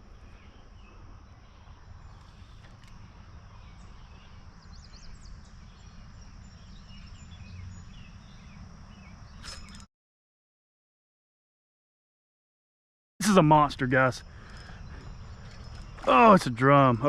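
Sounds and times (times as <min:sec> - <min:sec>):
faint bird chirps: 0:00.0 - 0:09.9, 0:14.1 - 0:17.0.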